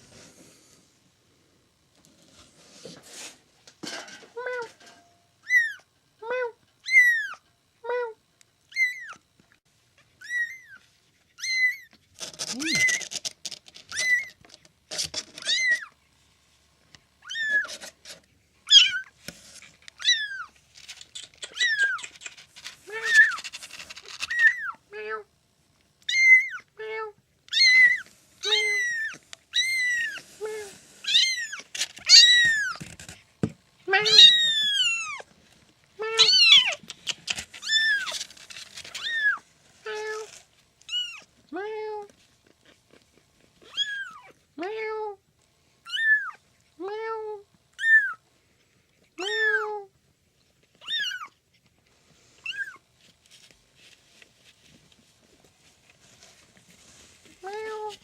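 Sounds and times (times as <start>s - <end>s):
faint scratchy rustles: 0.0s - 1.2s, 1.9s - 5.1s, 17.4s - 24.7s, 27.8s - 33.4s, 36.6s - 41.3s, 50.3s - 58.0s
kitten squeaks: 5.4s - 5.8s, 6.8s - 7.4s, 8.7s - 9.2s, 10.2s - 10.8s, 11.4s - 14.4s, 15.3s - 15.9s, 17.2s - 17.9s, 18.6s - 19.2s, 20.0s - 24.8s, 26.1s - 26.7s, 27.5s - 30.2s, 31.0s - 32.8s, 33.9s - 35.2s, 36.1s - 38.2s, 38.8s - 39.4s, 40.9s - 41.3s, 43.6s - 44.4s, 45.8s - 46.4s, 47.8s - 48.2s, 49.2s - 49.8s, 50.8s - 51.4s, 52.4s - 52.8s
kitten mewing: 11.4s - 13.2s, 20.0s - 25.3s, 33.9s - 35.2s, 36.0s - 38.2s
cat meowing: 33.9s - 35.2s, 36.1s - 36.8s.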